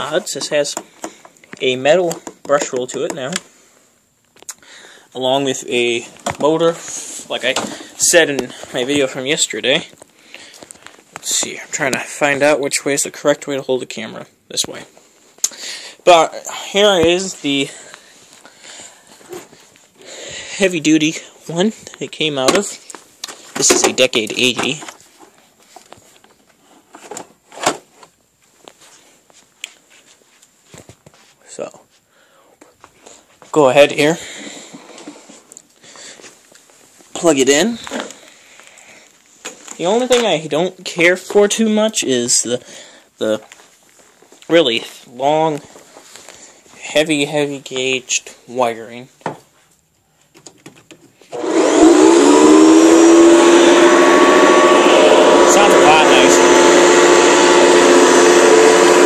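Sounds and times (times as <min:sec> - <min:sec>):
upright vacuum cleaner running: 0:51.3 - 0:59.0.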